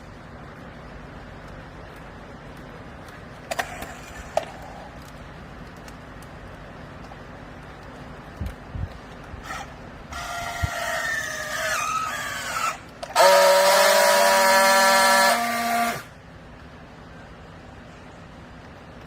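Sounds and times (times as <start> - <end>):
hydraulic pump whining: 9.4 - 16.1.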